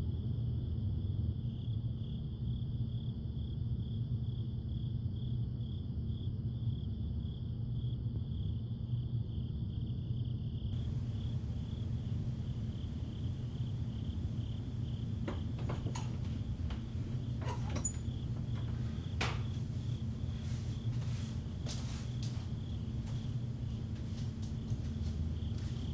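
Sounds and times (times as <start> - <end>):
constant low hum: 10.8 - 25.9
crickets chirping: 10.8 - 25.9.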